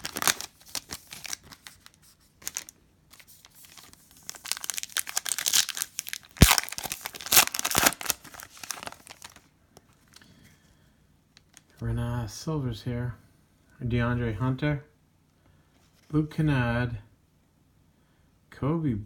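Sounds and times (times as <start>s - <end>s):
plastic wrapper tearing and crinkling: 0.0s - 9.5s.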